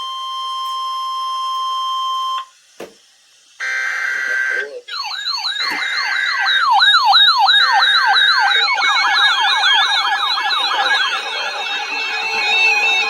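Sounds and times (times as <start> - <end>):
electronic siren sweeping downward: 3.6 - 13.0.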